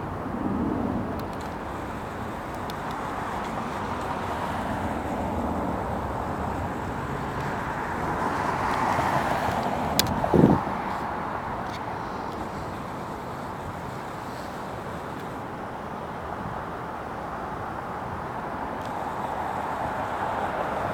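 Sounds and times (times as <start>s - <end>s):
traffic or aircraft engine noise: 0.0s - 20.9s.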